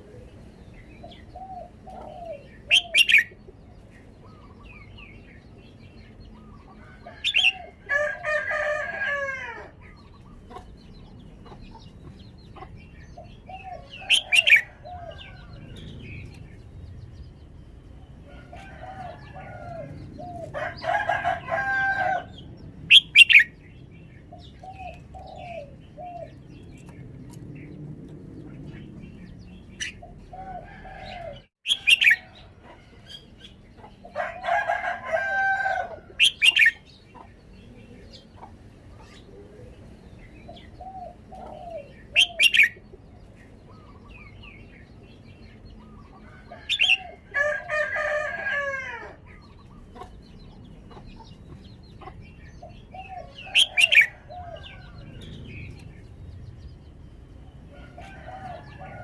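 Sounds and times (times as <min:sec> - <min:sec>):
bird calling sharp phrases: 0:01.1 - 0:03.4.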